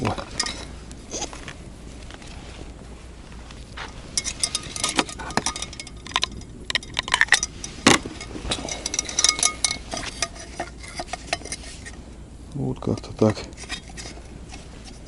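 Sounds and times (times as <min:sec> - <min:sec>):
metal clinking and tapping: 0:00.1 - 0:00.7, 0:03.8 - 0:12.0.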